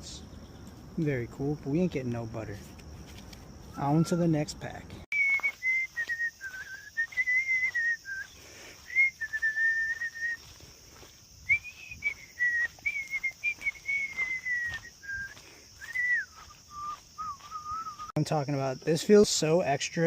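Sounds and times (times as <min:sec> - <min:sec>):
high drone of insects: 0:00.0 - 0:20.0
person whistling a tune: 0:03.7 - 0:04.3, 0:05.1 - 0:10.6, 0:11.5 - 0:18.1.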